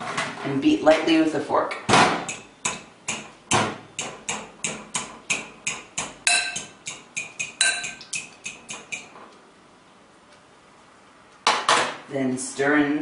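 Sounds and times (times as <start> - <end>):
fork clinking against bowl: 4.0 - 9.2.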